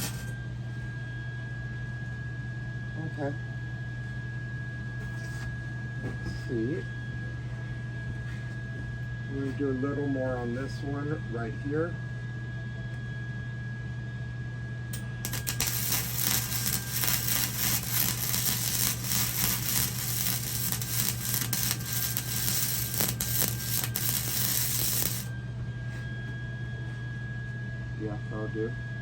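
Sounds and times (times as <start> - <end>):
welder crackling: 0.0 - 0.3, 15.0 - 25.3
steady electrical hum: 0.0 - 1.6, 14.8 - 26.9.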